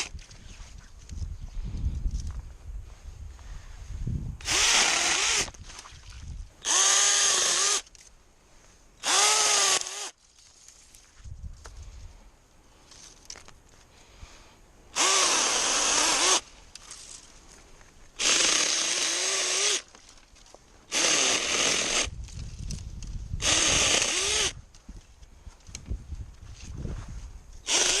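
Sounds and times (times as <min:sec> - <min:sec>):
electric chainsaw motor whine: 0:04.4 - 0:05.5, 0:09.0 - 0:10.1, 0:23.4 - 0:24.6, 0:27.7 - 0:28.0.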